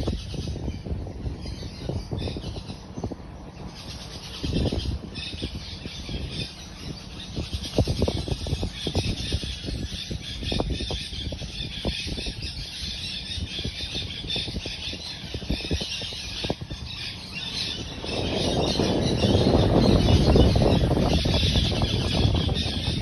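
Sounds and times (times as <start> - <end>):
birds squawking and squealing: 0.0 - 23.0.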